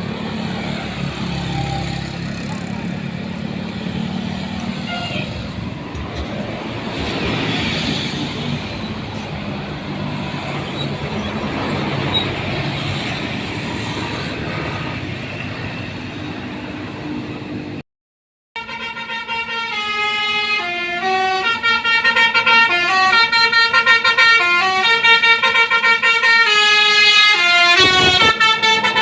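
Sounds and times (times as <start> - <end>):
diesel engine passing: 0.0 - 17.8
tyre and road noise: 0.0 - 17.8, 26.8 - 29.0.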